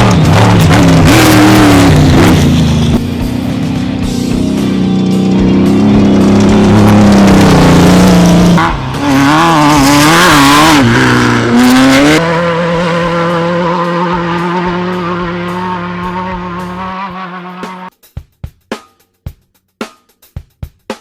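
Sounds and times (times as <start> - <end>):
race vehicle engine running hard: 0.0 - 17.9.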